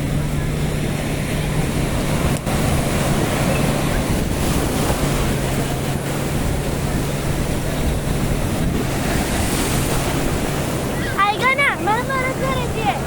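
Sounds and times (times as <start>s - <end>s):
jet ski engine drone: 0.0s - 13.0s
wind rushing over microphone: 0.0s - 13.0s.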